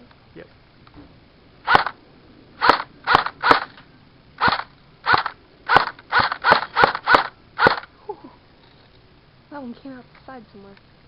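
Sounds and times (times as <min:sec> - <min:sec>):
airsoft rifle shots: 0:01.6 - 0:02.0, 0:02.6 - 0:03.8, 0:04.4 - 0:07.9.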